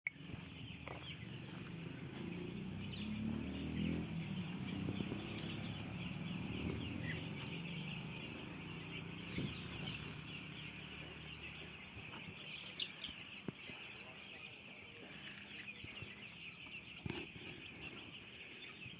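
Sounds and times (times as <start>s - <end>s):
chicks peeping: 0.1s - 18.9s
chickens clucking: 0.2s - 18.9s.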